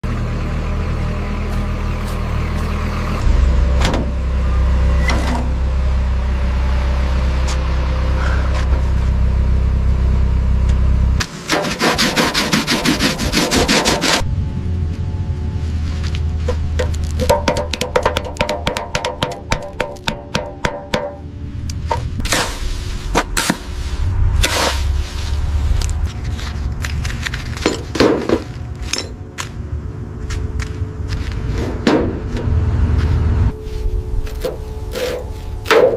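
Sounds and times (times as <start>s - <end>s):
car engine running: 0.0s - 11.5s, 13.2s - 35.9s
steady low rumble: 0.0s - 11.5s, 12.7s - 35.9s
scraping swishes: 22.2s - 27.6s.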